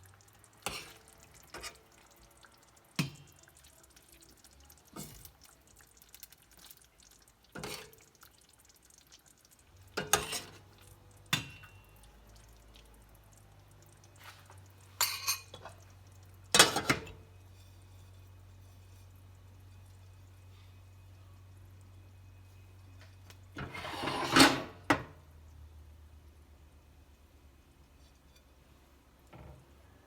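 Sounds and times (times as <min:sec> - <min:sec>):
dishes and utensils clattering: 0:10.0 - 0:10.7, 0:15.0 - 0:15.8, 0:16.6 - 0:17.2, 0:23.6 - 0:25.1
faint low hum: 0:10.6 - 0:23.6.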